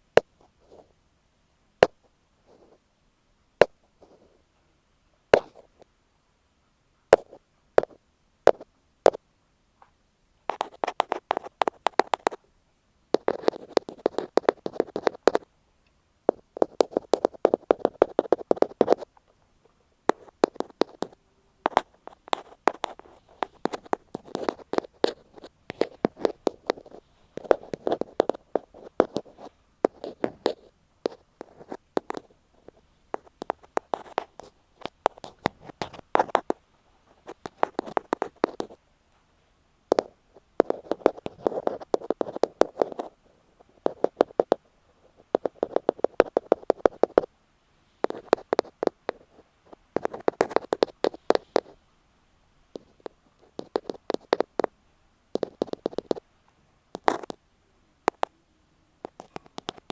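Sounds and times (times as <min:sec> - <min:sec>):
ear pick tapping on microphone: 0:07.1 - 0:09.2, 0:09.8 - 0:12.4, 0:13.1 - 0:15.4, 0:16.3 - 0:19.1, 0:20.1 - 0:36.6, 0:37.2 - 0:38.8, 0:39.9 - 0:43.1, 0:43.8 - 0:44.6, 0:45.3 - 0:47.3, 0:48.0 - 0:49.2, 0:50.0 - 0:51.8, 0:52.8 - 0:54.7, 0:55.4 - 0:56.2.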